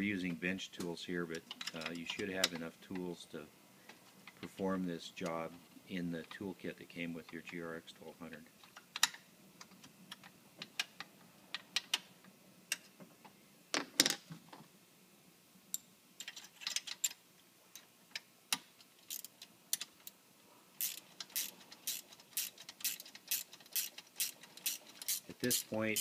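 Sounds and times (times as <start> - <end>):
ratchet wrench clicking: 19.1 - 19.3, 20.8 - 26.0
metallic clicks of hand tools: 20.8 - 26.0.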